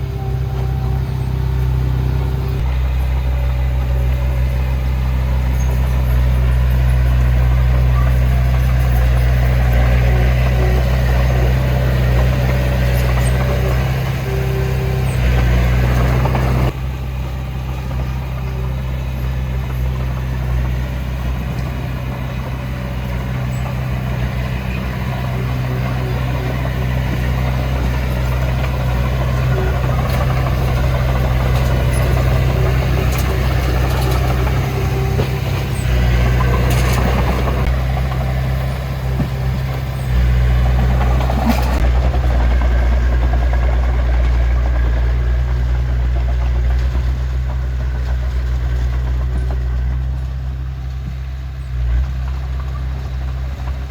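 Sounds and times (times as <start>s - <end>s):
diesel engine droning: 0.0s - 53.9s.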